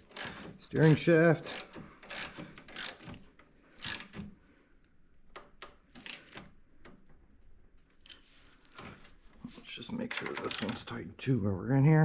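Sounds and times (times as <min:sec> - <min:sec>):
wrench metallic clicks and knocks: 0:00.0 - 0:04.3, 0:05.3 - 0:07.2, 0:10.2 - 0:10.9.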